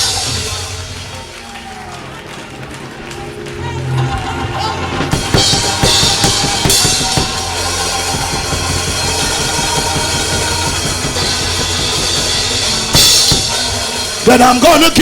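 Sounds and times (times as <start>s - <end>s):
drum kit rapid hits: 5.0s - 14.9s
cymbal crashes: 5.2s - 14.3s.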